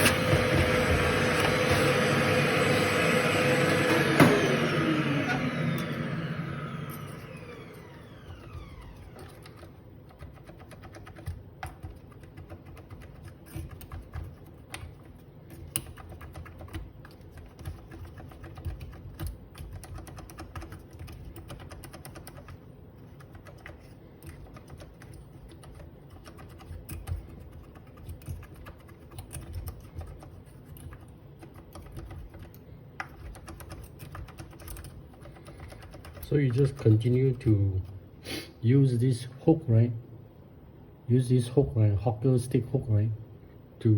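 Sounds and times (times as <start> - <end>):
electric motor spinning down: 0.0 - 9.2.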